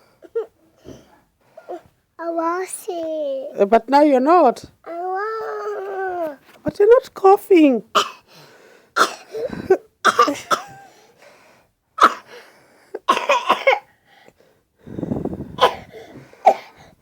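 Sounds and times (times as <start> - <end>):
child fake coughing: 7.9 - 8.3, 9.0 - 10.9, 12.0 - 12.4, 13.0 - 13.9, 15.6 - 16.8.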